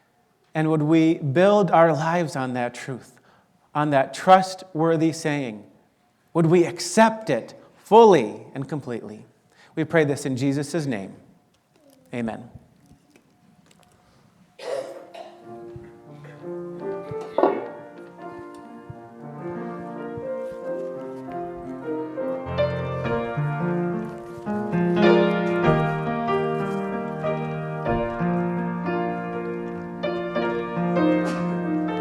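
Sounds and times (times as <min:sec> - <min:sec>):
slow instrumental music: 0:15.1 - 0:32.0.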